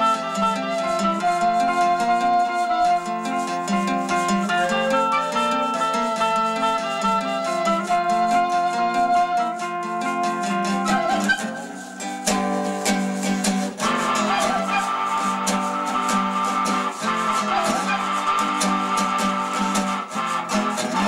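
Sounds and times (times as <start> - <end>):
guitar strumming chords: 0.0 - 21.0
sustained wavering melody: 10.8 - 19.6.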